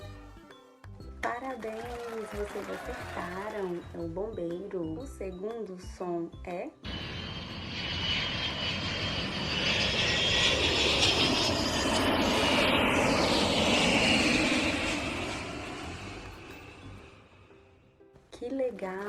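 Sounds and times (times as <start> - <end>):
airplane flying past: 6.8 - 17.8
high engine whine: 6.9 - 17.5.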